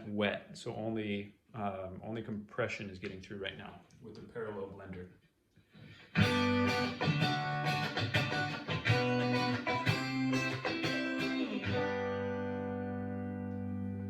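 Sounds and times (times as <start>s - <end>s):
compressed electric guitar notes: 5.9s - 14.0s.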